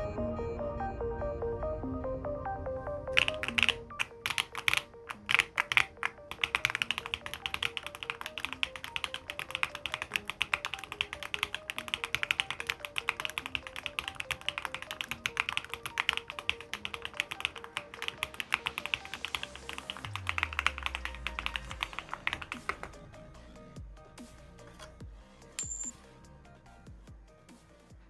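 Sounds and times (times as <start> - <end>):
soft background music: 0.0 - 28.0
keyboard key clicks: 3.2 - 22.8.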